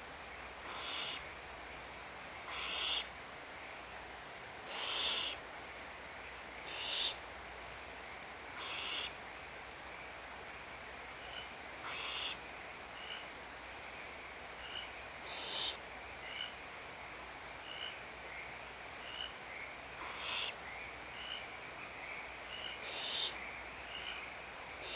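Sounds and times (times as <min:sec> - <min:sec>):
steady background hiss: 0:00.0 - 0:24.9
barn owl screeching: 0:00.7 - 0:01.2, 0:02.5 - 0:03.1, 0:04.7 - 0:05.4, 0:06.7 - 0:07.2, 0:08.6 - 0:09.1, 0:11.8 - 0:12.4, 0:15.2 - 0:15.8, 0:20.0 - 0:20.6, 0:22.8 - 0:23.4.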